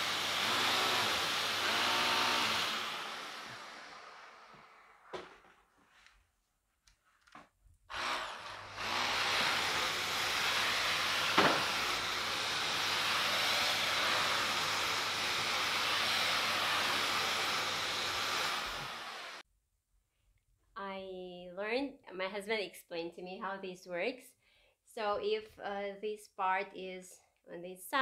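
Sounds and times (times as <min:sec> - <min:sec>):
vacuum cleaner running: 0:00.0 - 0:05.4, 0:07.9 - 0:19.4
sharp knock: 0:11.4 - 0:11.7.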